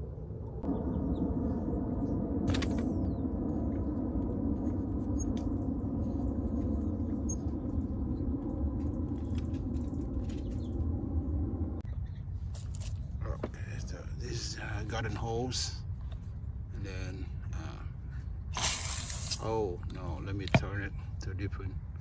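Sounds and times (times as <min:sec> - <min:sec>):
water rushing from garden hose: 0:18.6 - 0:19.6.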